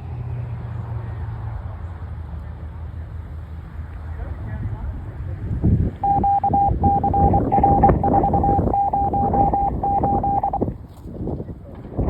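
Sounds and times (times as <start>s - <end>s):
short high beeps: 6.0s - 10.6s
muffled radio noise: 6.0s - 10.7s.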